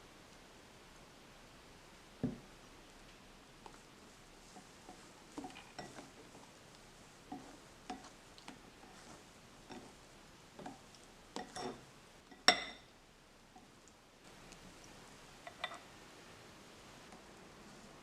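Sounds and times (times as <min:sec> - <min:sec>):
utensils tapping a bowl: 0:04.5 - 0:06.2, 0:07.3 - 0:10.0, 0:10.6 - 0:12.9, 0:15.4 - 0:15.8.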